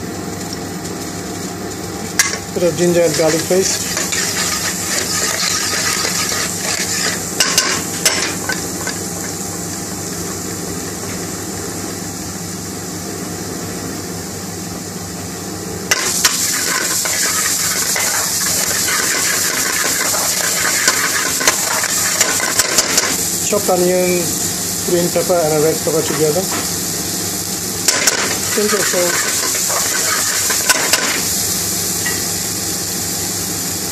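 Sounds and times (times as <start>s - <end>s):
paste sizzling in oil: 2.5s - 9.5s, 15.9s - 33.9s.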